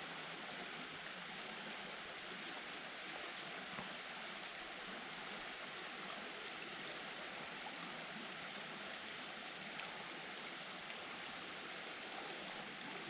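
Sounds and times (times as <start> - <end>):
creek water running: 0.0 - 13.0.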